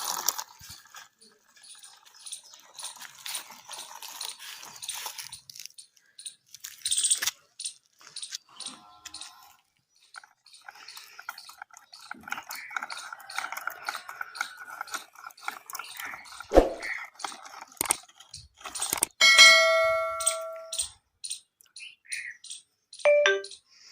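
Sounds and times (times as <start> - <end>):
toy vehicles clicking and clattering: 0.0 - 23.9
bell-like ding: 19.2 - 20.8, 23.1 - 23.6.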